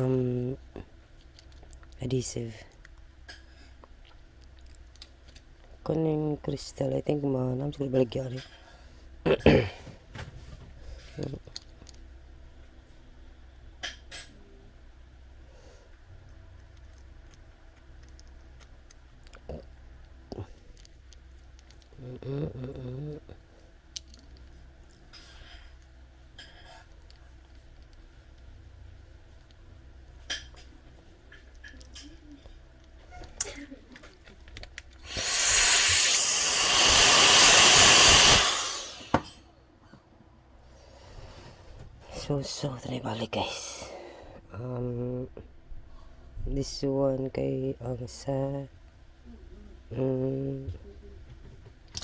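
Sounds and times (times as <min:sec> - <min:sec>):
electric blower whining: 0:35.0 - 0:39.2.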